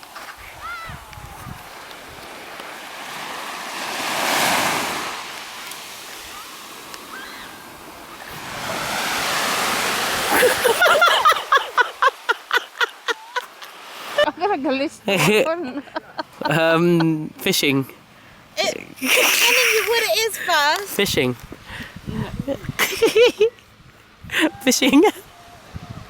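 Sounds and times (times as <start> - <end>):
sea waves breaking on beach: 0.0 - 14.4.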